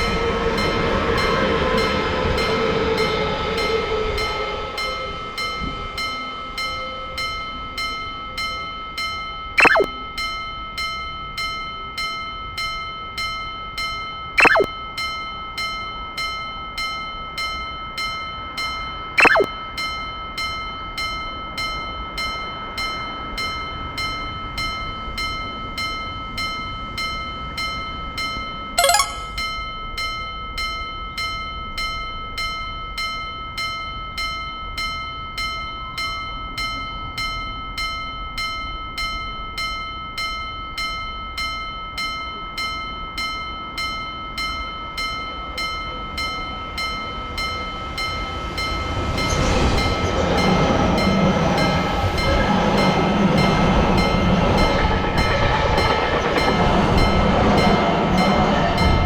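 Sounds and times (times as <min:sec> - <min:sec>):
level-crossing bell ringing: 0:28.8 - 0:29.6
train rushing past: 0:47.1 - 0:59.0.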